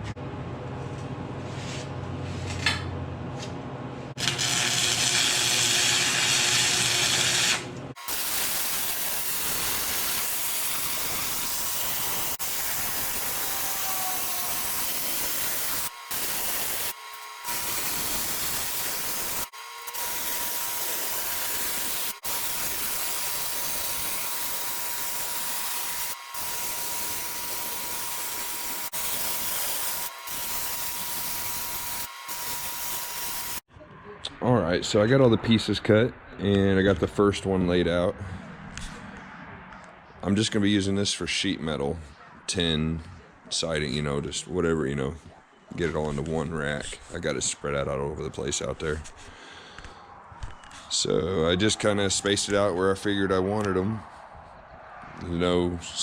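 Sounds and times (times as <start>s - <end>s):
power tool cutting metal: 4.2s - 33.7s.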